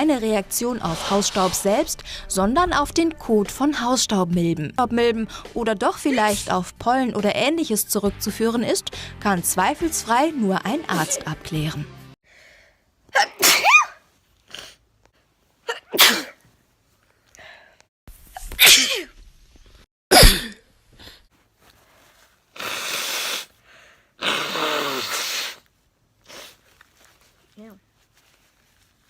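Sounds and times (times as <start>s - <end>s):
person sneezing: 13.2s - 14.8s, 15.7s - 16.4s, 20.1s - 20.6s, 22.6s - 23.5s, 24.2s - 25.6s
nose blowing: 22.5s - 23.6s, 24.2s - 26.6s.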